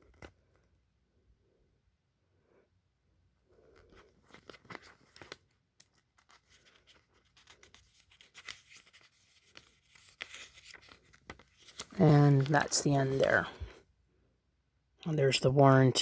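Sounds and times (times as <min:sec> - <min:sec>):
paper pages turning and rustling: 0:00.0 - 0:00.7, 0:03.6 - 0:13.7.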